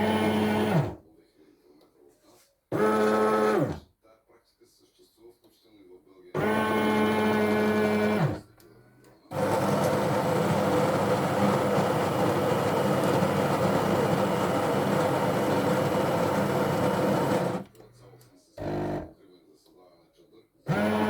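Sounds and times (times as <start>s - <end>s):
motor whirring: 0.0s - 1.0s, 2.7s - 3.8s, 6.4s - 8.4s, 9.3s - 17.8s, 18.6s - 19.1s, 20.7s - 21.0s
rough machine noise: 6.4s - 8.4s, 9.3s - 17.8s, 18.6s - 19.1s, 20.7s - 21.0s.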